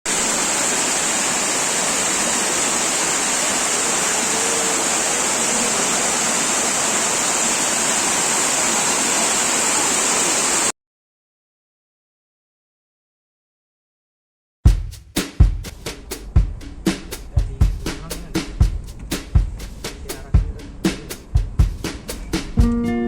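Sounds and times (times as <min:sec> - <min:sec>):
waterfall rushing: 0:00.1 - 0:10.7.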